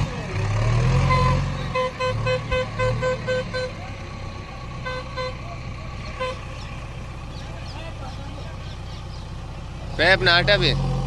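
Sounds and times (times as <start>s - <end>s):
vehicle horn short beeps: 1.0s - 3.9s, 4.8s - 6.5s.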